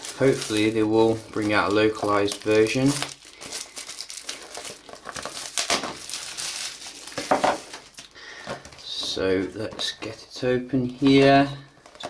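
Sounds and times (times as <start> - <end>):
packaging crinkling: 0.0 - 9.0.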